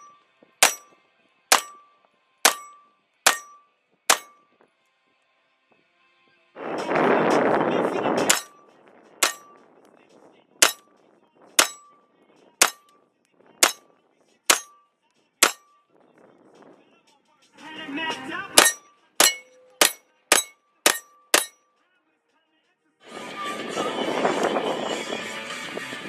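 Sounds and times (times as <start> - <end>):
metallic ring of steel target: 0.0 - 1.9, 2.5 - 4.5, 8.2 - 9.7, 10.6 - 10.9, 11.6 - 12.0, 12.6 - 13.0, 13.6 - 13.9, 14.5 - 14.8, 15.4 - 15.8, 18.6 - 21.6
loud rush of noise: 6.6 - 9.0
gunshots: 8.2 - 8.6.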